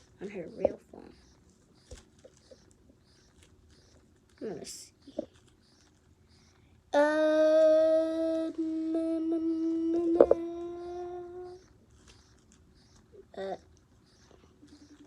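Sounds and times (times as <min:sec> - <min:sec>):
child humming: 0:06.9 - 0:11.7, 0:13.2 - 0:13.7.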